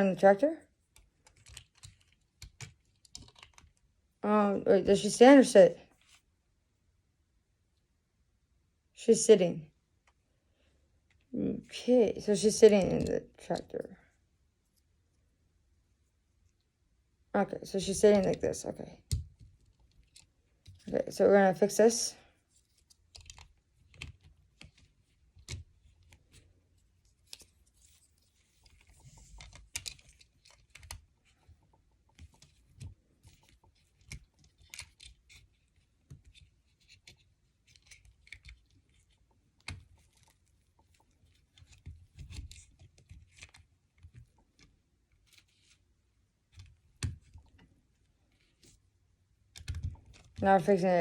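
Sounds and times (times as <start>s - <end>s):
plastic bricks clicking: 1.0s - 3.8s.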